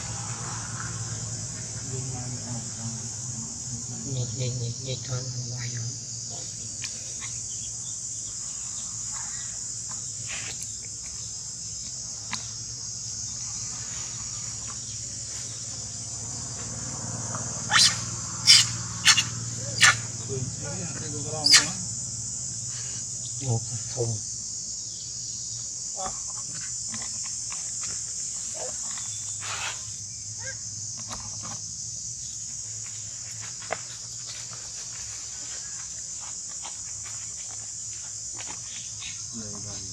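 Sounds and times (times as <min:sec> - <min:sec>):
insect chorus drone: 0:00.0 - 0:39.9
rustles: 0:06.3 - 0:20.2, 0:25.6 - 0:30.2, 0:30.9 - 0:39.9
monkey calls: 0:17.7 - 0:20.2, 0:21.3 - 0:21.8.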